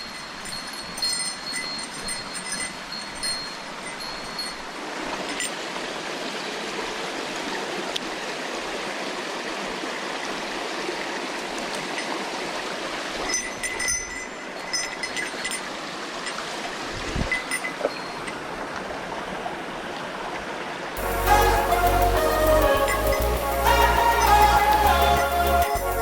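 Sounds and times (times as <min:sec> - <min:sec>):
stream water rushing: 0:00.0 - 0:26.0
thin high tone: 0:21.0 - 0:26.0.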